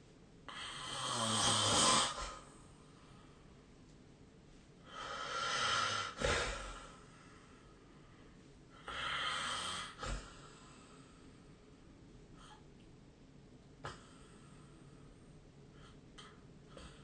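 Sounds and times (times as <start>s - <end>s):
person snoring: 0.5s - 2.5s, 4.9s - 7.0s, 8.8s - 10.7s.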